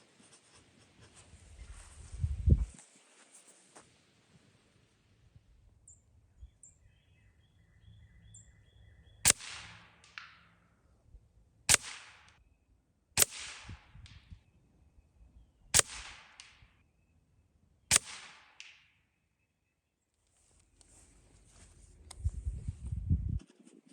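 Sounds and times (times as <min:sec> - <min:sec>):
air rifle shots: 0:09.2 - 0:10.6, 0:11.7 - 0:12.4, 0:13.2 - 0:14.2, 0:15.7 - 0:16.8, 0:17.9 - 0:19.0.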